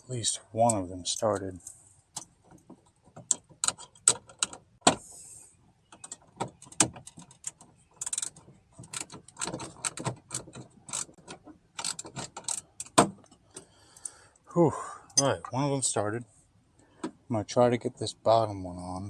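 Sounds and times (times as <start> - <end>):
metal bolt clicking and clinking: 2.2 - 4.6, 5.9 - 13.5.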